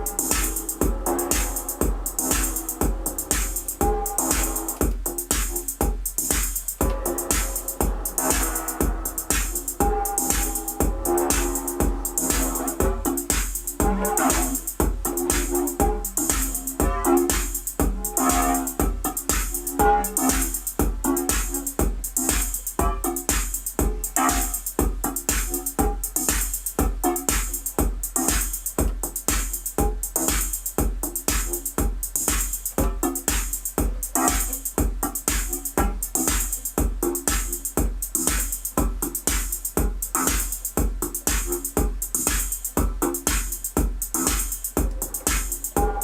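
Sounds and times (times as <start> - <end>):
repeating analog synth notes: 0.0 - 28.4
drum machine kick: 0.0 - 46.0.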